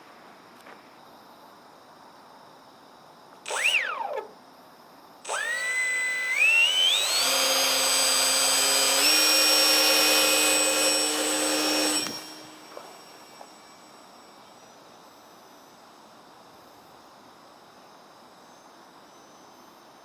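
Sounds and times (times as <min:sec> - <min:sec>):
electric motor and propeller whining: 0:03.5 - 0:04.3, 0:05.3 - 0:14.1.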